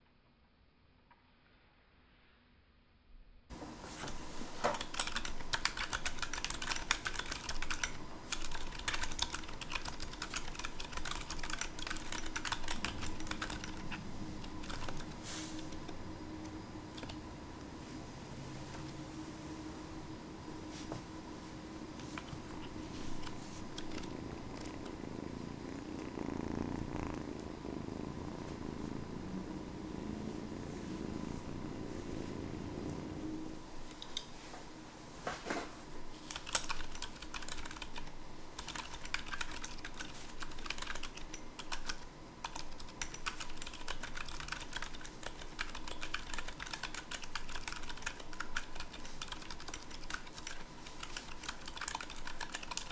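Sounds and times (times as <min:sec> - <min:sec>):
typing on mechanical keyboard: 0:04.7 - 0:16.0, 0:16.9 - 0:17.2, 0:22.1 - 0:25.2, 0:36.3 - 0:52.9.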